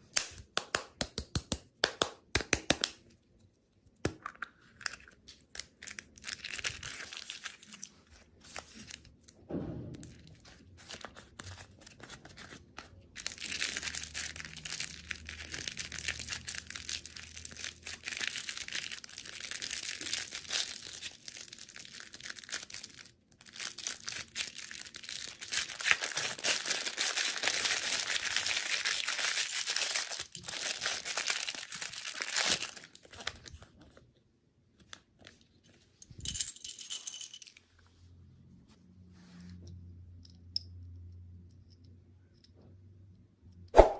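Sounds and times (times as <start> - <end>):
plastic candy wrappers crinkling: 4.6 - 9.3, 10.8 - 33.8.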